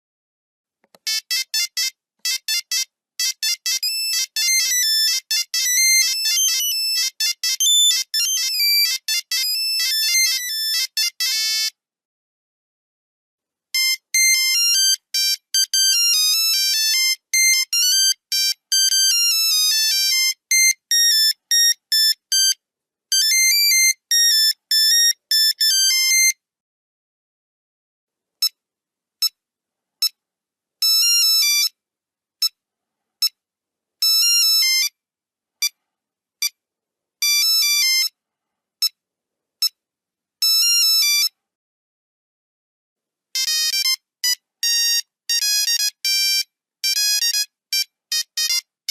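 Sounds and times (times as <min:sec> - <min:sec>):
monophonic phone ringtone: 0:01.0 - 0:11.7, 0:13.8 - 0:26.4, 0:34.0 - 0:34.9, 0:37.2 - 0:38.1, 0:40.4 - 0:41.3, 0:43.4 - 0:48.9.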